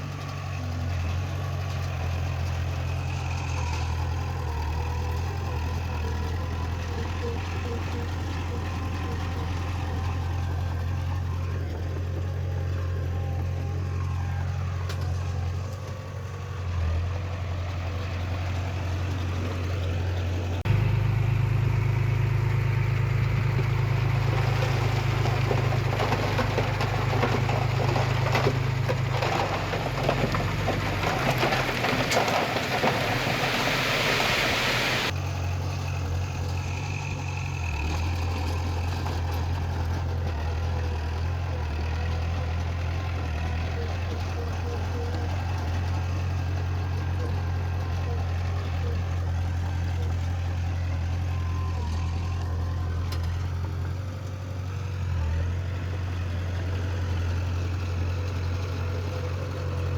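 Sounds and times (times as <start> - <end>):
heavy machinery diesel engines: 0.0 - 59.9
machinery clatter and hiss: 25.3 - 35.1.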